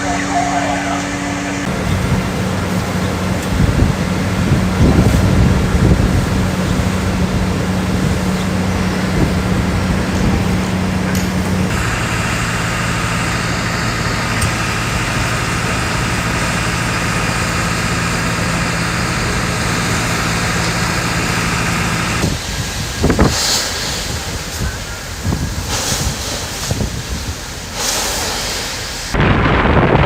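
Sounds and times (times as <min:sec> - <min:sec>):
engine hum: 0:00.0 - 0:30.0
rushing noise: 0:00.0 - 0:30.0.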